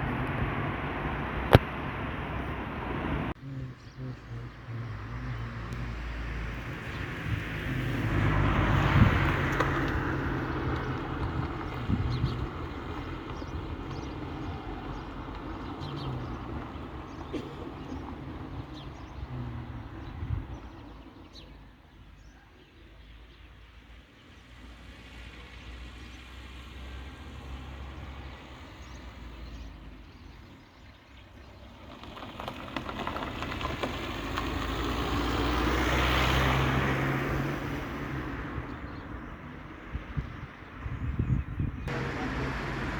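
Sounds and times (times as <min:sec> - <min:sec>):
vehicle passing by: 0:00.0 - 0:21.4, 0:31.4 - 0:42.9
vehicle approaching: 0:00.0 - 0:21.6, 0:24.4 - 0:42.9.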